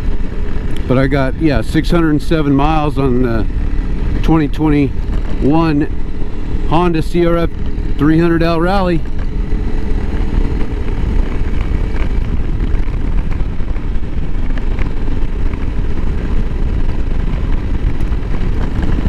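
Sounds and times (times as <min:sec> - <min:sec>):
motorcycle engine running: 0:00.0 - 0:19.0
wind noise: 0:00.0 - 0:19.0.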